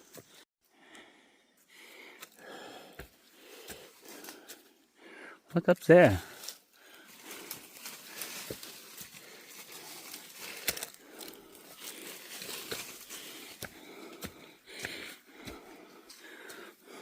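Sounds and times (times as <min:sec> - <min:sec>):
footsteps crunching on trail: 0:01.7 - 0:04.8, 0:06.1 - 0:17.0.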